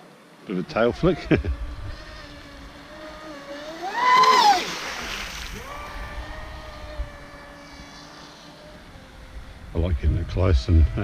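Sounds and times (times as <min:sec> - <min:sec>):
electric motor whining: 0:00.0 - 0:11.0
water spray hiss: 0:03.9 - 0:05.6.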